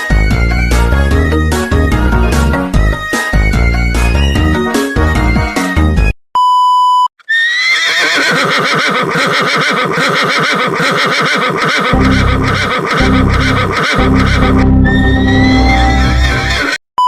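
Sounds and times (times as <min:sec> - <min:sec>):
music: 0:00.0 - 0:06.2, 0:12.0 - 0:16.6
bass beat: 0:00.4 - 0:04.6, 0:12.0 - 0:16.5
warbling horse whinny effect: 0:07.3 - 0:16.8.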